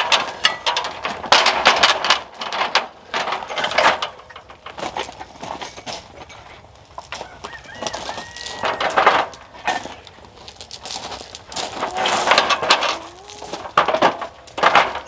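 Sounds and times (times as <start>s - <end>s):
rapid clattering and knocking: 11.0s - 15.0s.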